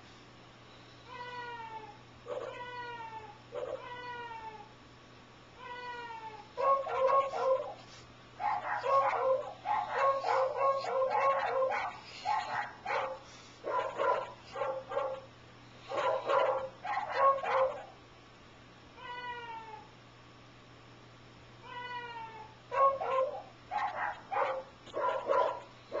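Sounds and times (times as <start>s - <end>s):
dog barking: 2.3s - 2.6s, 3.5s - 3.8s, 6.6s - 7.8s, 8.4s - 18.0s, 22.7s - 26.0s.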